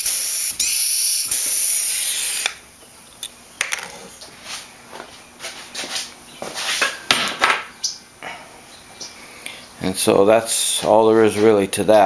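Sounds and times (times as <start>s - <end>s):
air rivet gun hissing: 0.0s - 2.6s.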